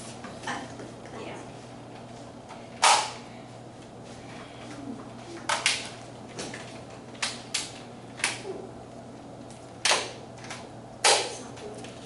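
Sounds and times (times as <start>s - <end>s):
toy blaster pops: 2.8s - 3.2s, 11.0s - 11.4s.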